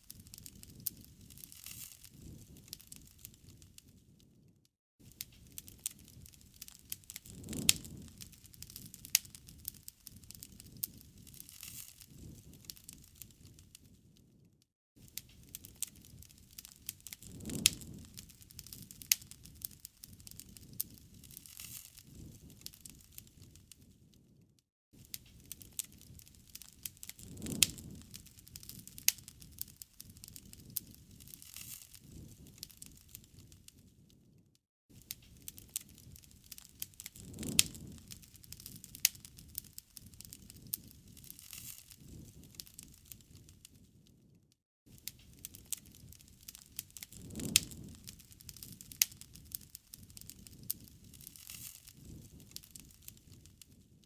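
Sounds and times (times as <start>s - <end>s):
rush of flame: 0.0s - 4.4s, 5.0s - 14.1s, 15.0s - 24.0s, 25.0s - 33.9s, 34.9s - 43.9s, 44.9s - 53.9s
burning wood popping: 0.0s - 14.4s, 15.0s - 24.4s, 25.0s - 44.1s, 44.9s - 54.0s
wood fire crackling: 0.0s - 54.0s.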